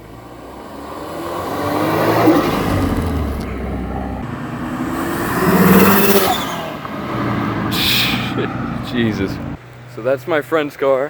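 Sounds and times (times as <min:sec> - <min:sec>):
car engine revving: 0:00.0 - 0:10.1.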